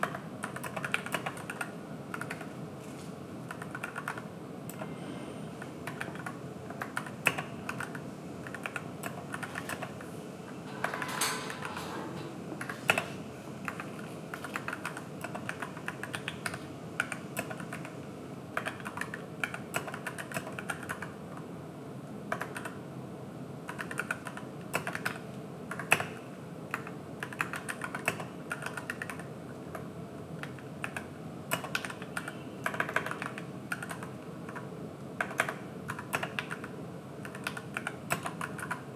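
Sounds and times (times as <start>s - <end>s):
mechanical keyboard typing: 0.0s - 2.5s, 3.5s - 4.9s, 5.8s - 10.0s, 13.6s - 18.0s, 18.6s - 21.4s, 22.3s - 22.8s, 23.7s - 38.9s.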